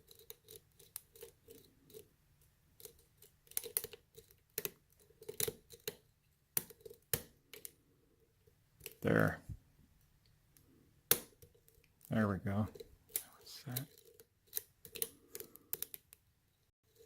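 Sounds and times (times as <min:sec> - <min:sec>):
lock picking clicks and scrapes: 0:00.0 - 0:02.1, 0:02.8 - 0:07.8, 0:10.5 - 0:16.2.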